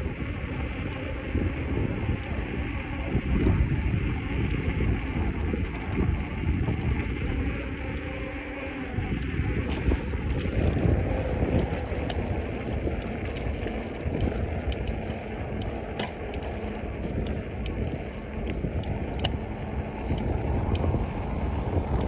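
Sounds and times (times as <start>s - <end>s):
bicycle tyre noise: 0.0s - 22.0s
wind buffeting microphone: 0.0s - 22.0s.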